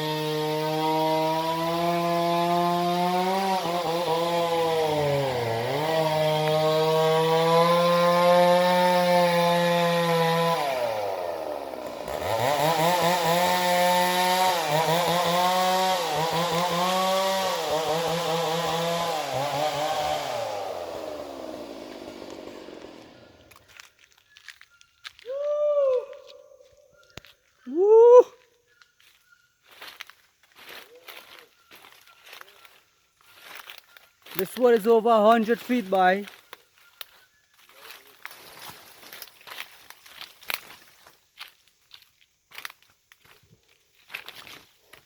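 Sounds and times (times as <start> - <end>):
chainsaw cutting timber: 0.0 - 23.9, 29.9 - 37.2.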